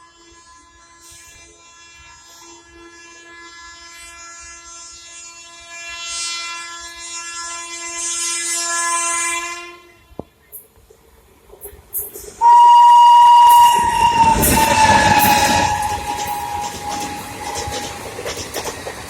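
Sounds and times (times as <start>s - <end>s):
locomotive horn blast: 12.4s - 18.2s.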